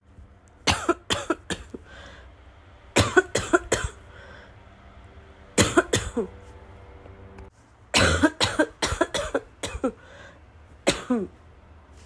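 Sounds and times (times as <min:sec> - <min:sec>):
woman coughing: 0:00.6 - 0:01.8, 0:03.0 - 0:04.1, 0:05.6 - 0:06.4, 0:08.0 - 0:10.0, 0:10.8 - 0:11.4.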